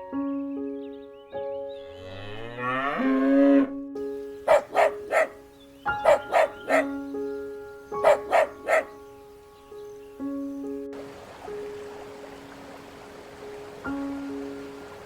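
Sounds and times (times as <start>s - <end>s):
background music with held notes: 0.0s - 15.0s
cow mooing: 1.9s - 3.7s
quick sharp calls: 4.5s - 6.9s, 8.0s - 8.9s.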